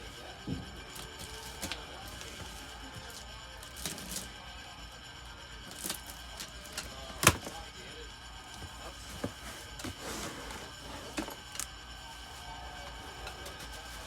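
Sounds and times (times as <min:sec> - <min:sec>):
box knocks and rustles: 0:08.6 - 0:11.4.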